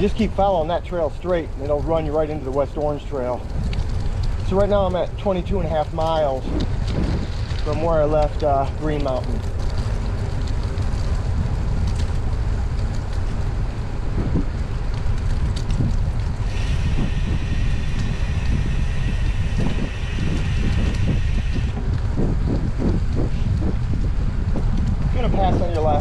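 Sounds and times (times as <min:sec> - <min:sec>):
wind buffeting microphone: 0:00.0 - 0:26.0
steady high buzz: 0:16.4 - 0:25.9.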